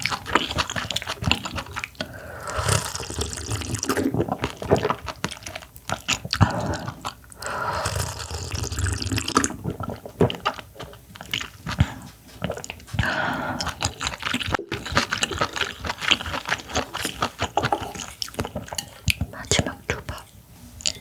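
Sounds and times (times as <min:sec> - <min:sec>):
wet chewing: 0:00.0 - 0:21.0.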